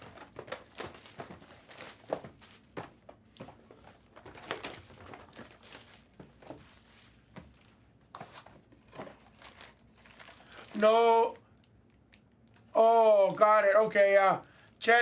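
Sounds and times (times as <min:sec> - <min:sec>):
plastic packaging crinkling and tearing: 0:00.0 - 0:02.8, 0:04.0 - 0:12.7.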